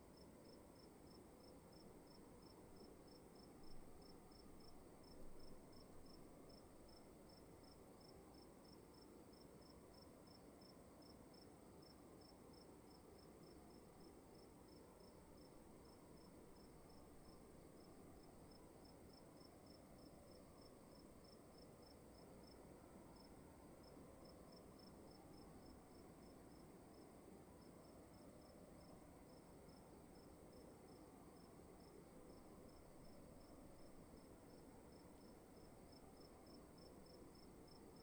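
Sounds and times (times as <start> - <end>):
low room tone hiss: 0.0 - 38.0
crickets trilling and chirping: 28.8 - 38.0.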